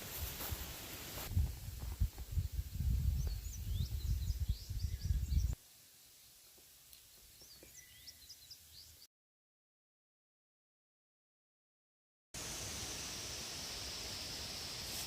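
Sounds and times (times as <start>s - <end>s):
wind buffeting microphone: 1.3s - 5.6s
songbird chirping: 2.2s - 5.6s, 6.9s - 9.1s.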